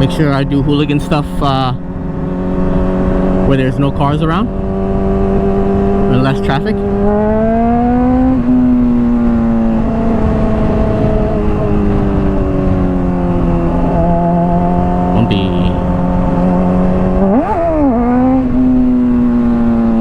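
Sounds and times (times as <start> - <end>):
motorcycle engine cruising: 0.0 - 20.0
motorcycle engine revving: 0.0 - 20.0
wind on microphone: 6.8 - 20.0.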